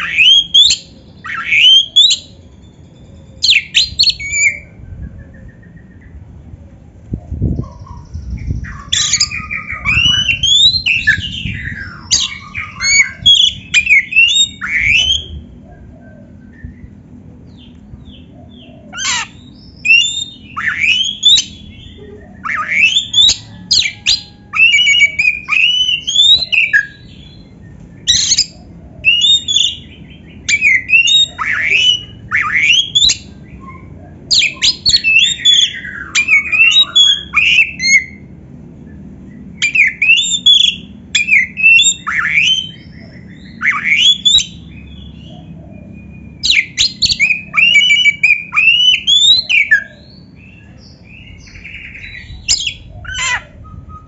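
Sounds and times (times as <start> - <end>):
bird singing whistled phrases: 0.0 - 2.4, 7.9 - 15.4, 19.0 - 27.3, 28.0 - 38.2, 39.6 - 45.0, 45.7 - 54.0
faint steady hum: 0.0 - 54.0.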